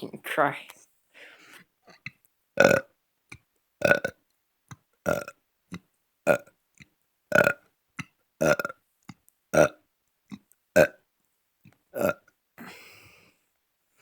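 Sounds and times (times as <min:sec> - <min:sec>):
person burping: 0:02.0 - 0:02.9, 0:03.8 - 0:04.2, 0:05.1 - 0:05.4, 0:06.3 - 0:06.5, 0:07.3 - 0:07.6, 0:08.4 - 0:08.8, 0:09.6 - 0:09.8, 0:10.8 - 0:11.0, 0:12.0 - 0:12.8.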